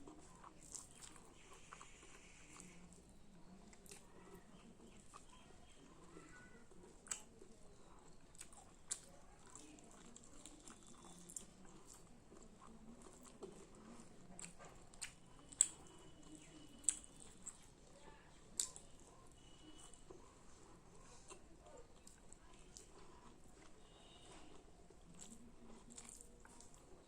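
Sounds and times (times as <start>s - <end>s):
person chewing food: 0.0s - 27.0s.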